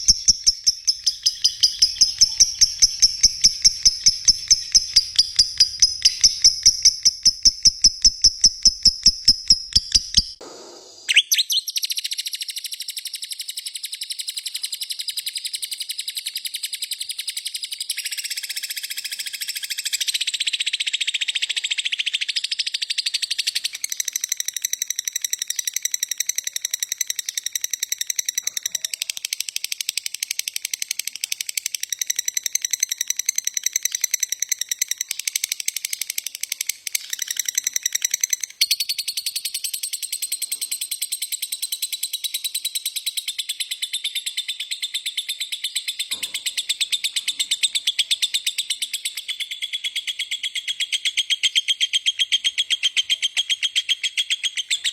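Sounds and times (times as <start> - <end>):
lovebirds chirping: 0.0 - 11.9.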